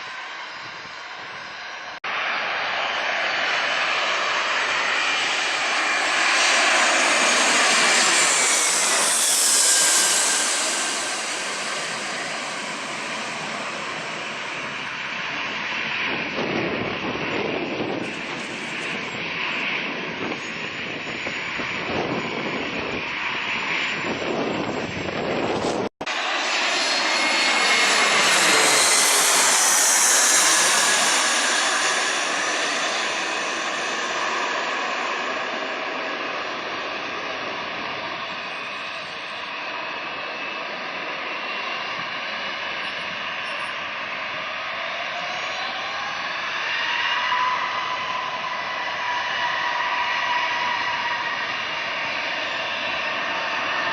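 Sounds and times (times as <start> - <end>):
jet engines rushing: 0.0 - 53.9
faint high whine: 6.8 - 15.3.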